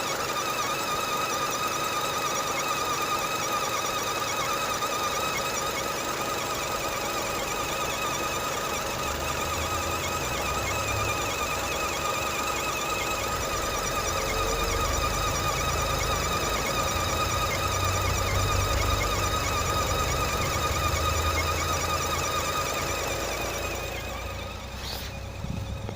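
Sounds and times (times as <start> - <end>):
warbling pulley whistle and squeal: 0.0 - 25.9
engine hum: 6.8 - 25.9.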